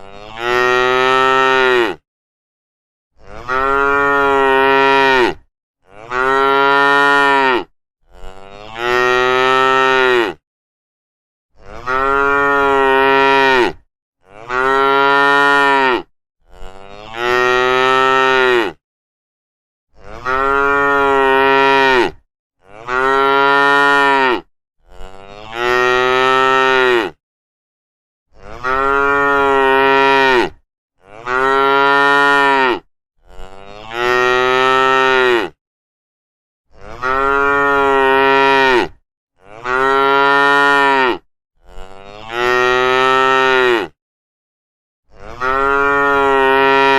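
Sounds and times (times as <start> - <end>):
cattle mooing: 3.2 - 10.4, 11.6 - 18.8, 20.1 - 27.2, 28.4 - 35.6, 36.8 - 44.0, 45.1 - 46.9.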